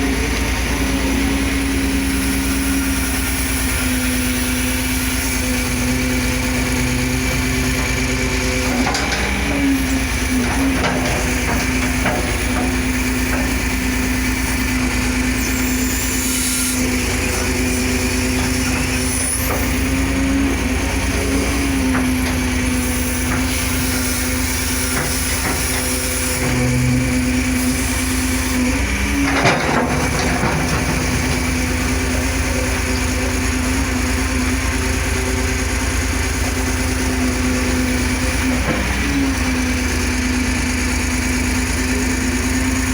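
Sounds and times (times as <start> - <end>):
excavator diesel engine running: 0.0 - 42.9
knocks and clanks: 7.6 - 13.9, 21.5 - 27.1, 29.2 - 32.6.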